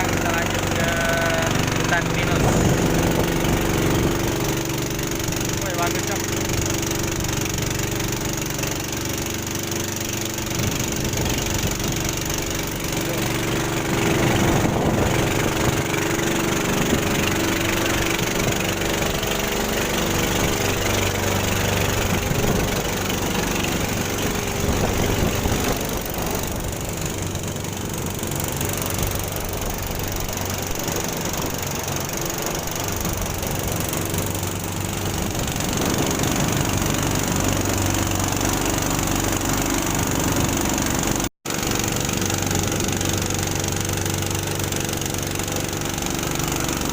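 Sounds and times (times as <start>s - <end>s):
rumbling ride noise: 0.0s - 46.9s
vehicle engine running: 0.0s - 46.9s.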